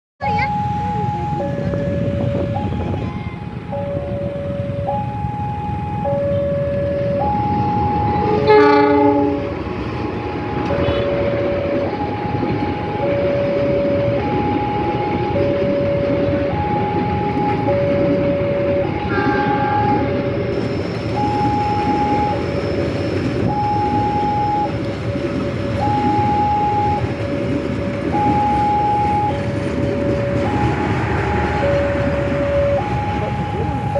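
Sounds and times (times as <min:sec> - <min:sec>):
train rumbling past: 0:00.2 - 0:33.9
two-tone warning signal: 0:00.2 - 0:33.9
train horn: 0:06.2 - 0:11.9, 0:18.2 - 0:20.7, 0:28.4 - 0:33.9.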